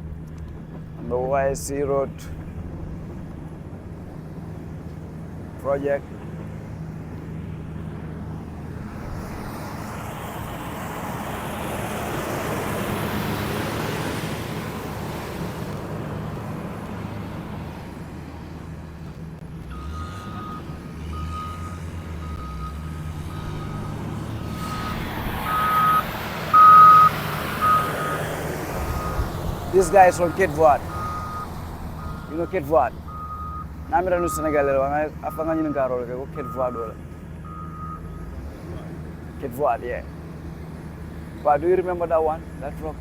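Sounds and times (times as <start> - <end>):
heavy machine engines humming: 0.0 - 43.0
reversing alarm beeps: 19.7 - 28.2, 28.9 - 29.2, 29.8 - 38.3.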